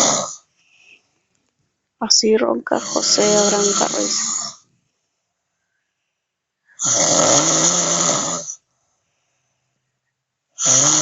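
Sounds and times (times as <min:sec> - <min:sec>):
man snoring: 0:00.0 - 0:00.4, 0:02.8 - 0:04.6, 0:06.8 - 0:08.6, 0:10.6 - 0:11.0.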